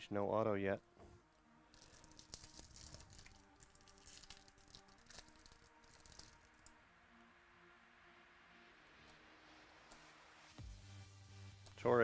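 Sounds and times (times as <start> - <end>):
card packs crinkling: 1.7 - 6.8.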